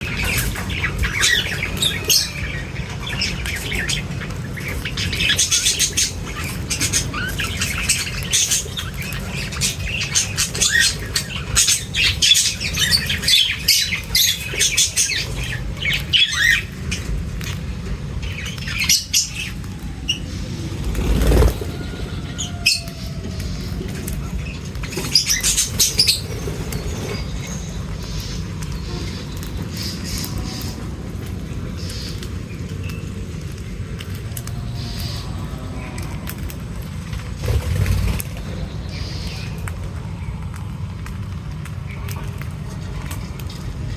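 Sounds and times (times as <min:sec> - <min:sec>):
birds chirping and squawking: 0:00.0 - 0:43.9
steady low rumble: 0:00.0 - 0:43.9
rush of noise: 0:16.7 - 0:32.4
wing flutters: 0:18.8 - 0:32.9, 0:36.2 - 0:39.7.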